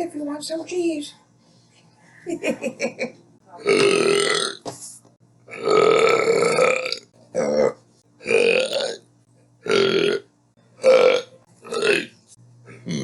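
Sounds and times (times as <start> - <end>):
woman burping: 3.6 - 4.6, 5.5 - 9.0, 10.8 - 12.1.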